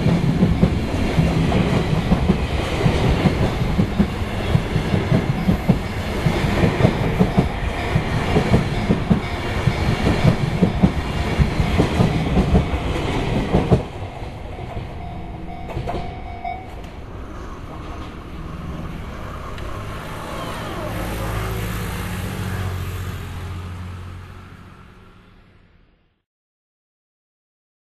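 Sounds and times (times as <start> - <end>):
train wheels clattering over rail joints: 0.0 - 15.0
low train rumble: 0.0 - 26.1.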